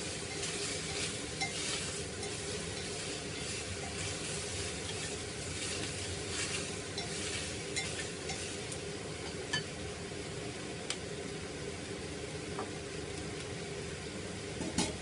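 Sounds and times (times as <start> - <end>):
spoon scraping in a pan: 0.0 - 9.7
sizzling hiss: 0.0 - 10.3.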